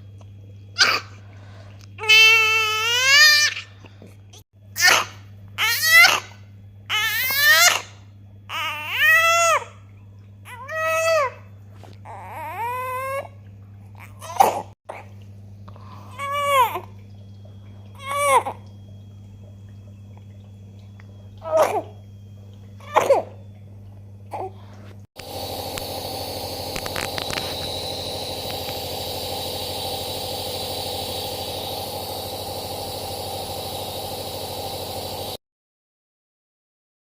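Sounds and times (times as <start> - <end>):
steady hum with faint tones: 0.0 - 35.4
baby coughing: 4.8 - 5.2.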